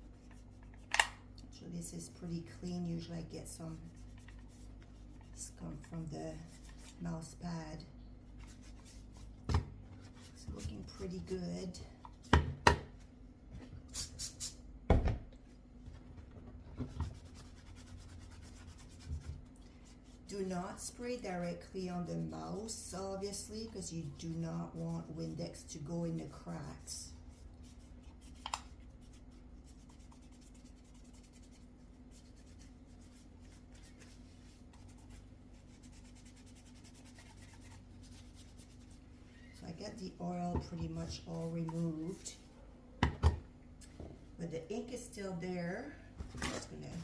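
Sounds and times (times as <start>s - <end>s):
steady low hum: 0.0s - 47.0s
paper towel wiping a mouse: 3.0s - 7.2s, 8.4s - 9.4s, 26.0s - 39.1s.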